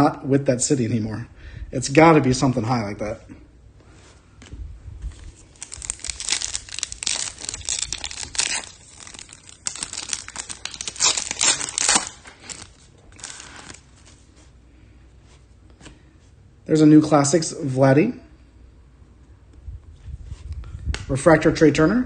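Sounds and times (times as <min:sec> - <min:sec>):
wrapper rustling: 0:04.0 - 0:14.5
foil wrapper tearing and crinkling: 0:05.4 - 0:14.0.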